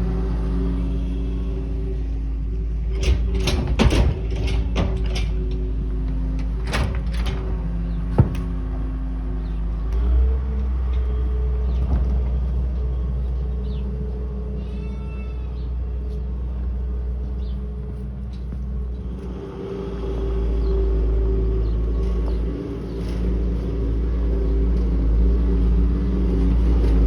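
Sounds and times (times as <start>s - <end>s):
truck engine running: 0.0s - 27.0s
metal clanks and rattles: 2.8s - 13.9s.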